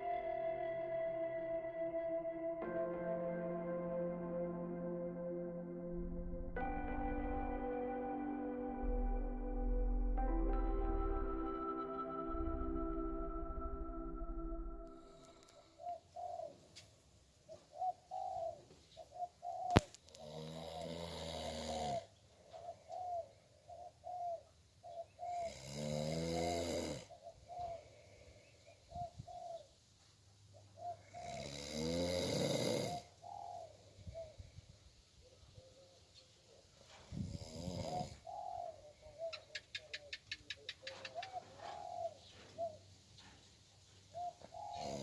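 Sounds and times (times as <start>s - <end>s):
doves cooing: 15.4s - 16.8s, 17.5s - 28.0s, 28.9s - 29.7s, 30.5s - 34.6s, 35.2s - 43.4s, 44.1s - 45.0s.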